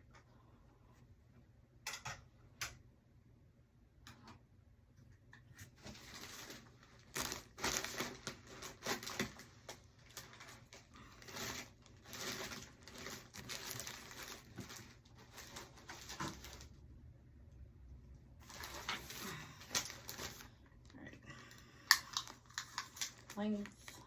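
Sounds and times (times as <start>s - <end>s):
small clicks and crackles: 5.2s - 16.8s, 18.4s - 24.0s
packaging crinkling: 5.8s - 16.8s, 18.4s - 20.9s, 21.8s - 24.0s.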